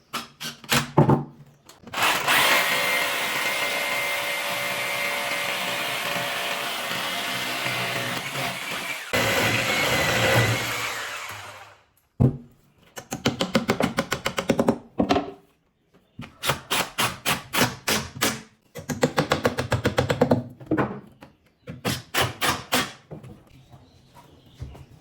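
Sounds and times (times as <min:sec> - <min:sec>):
power tool running: 0:01.9 - 0:11.9.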